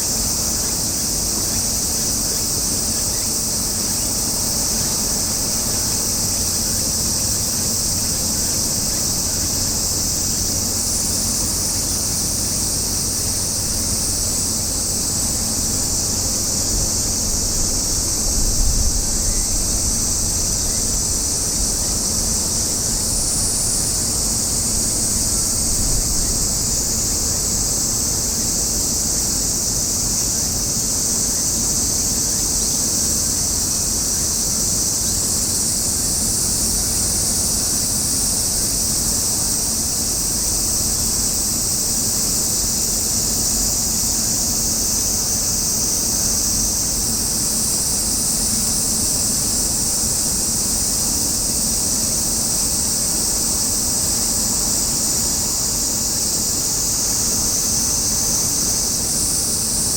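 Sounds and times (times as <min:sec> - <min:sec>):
cicadas chorus: 0:00.0 - 0:59.9
low wind rumble: 0:13.1 - 0:28.8.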